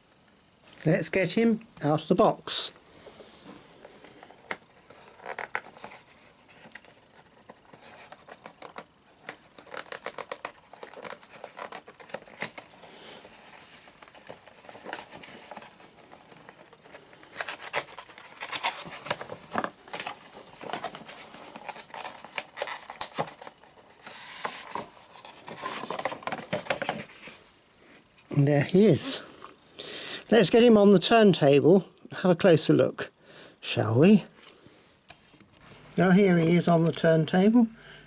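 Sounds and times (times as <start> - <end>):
packaging rustling and crinkling: 3.0 - 29.6, 35.0 - 37.7
small clicks and scrapes: 3.8 - 27.4.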